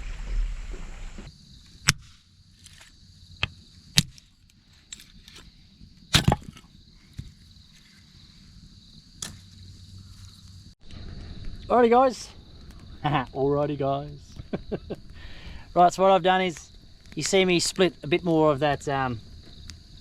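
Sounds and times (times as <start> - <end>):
axe chopping wood: 1.8 - 2.2, 6.1 - 7.3.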